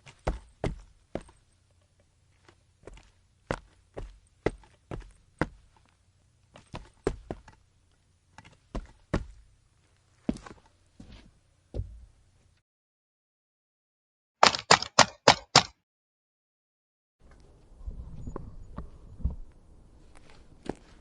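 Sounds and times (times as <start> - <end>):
footsteps on concrete: 0.0 - 1.4, 2.3 - 7.6, 8.4 - 12.1, 20.0 - 21.0.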